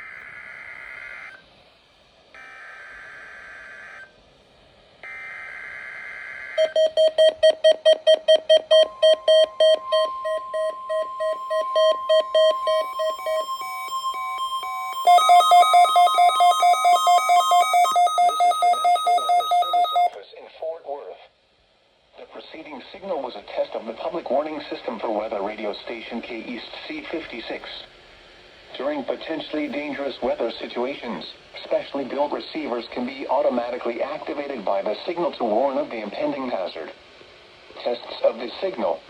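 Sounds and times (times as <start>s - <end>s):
steady warning alarm tone: 5.0s - 20.2s
electronic alert beeping: 6.6s - 20.2s
louder beeping at different pitches: 6.6s - 20.2s
buzzy digital data bursts: 8.6s - 20.0s.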